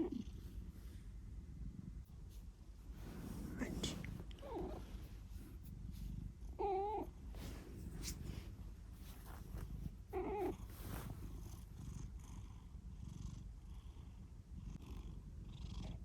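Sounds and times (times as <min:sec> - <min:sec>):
cat snoring: 0:09.6 - 0:16.0.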